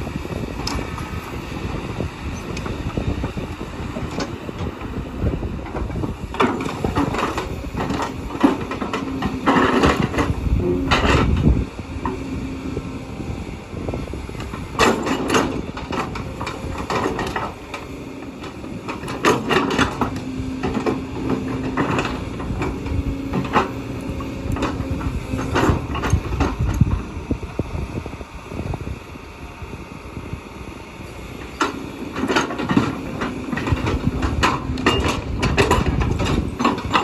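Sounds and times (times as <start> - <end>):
excavator engine running: 0.0 - 37.0
metal clanks and knocks: 5.6 - 12.4, 14.4 - 27.0, 31.6 - 37.0.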